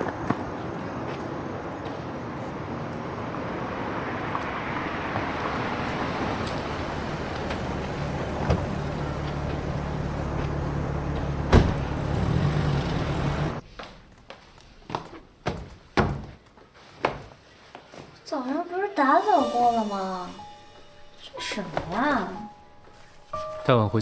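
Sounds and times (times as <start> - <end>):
road traffic noise: 0.0 - 13.9
car engine humming: 3.4 - 13.6
sharp thump: 11.5 - 11.9.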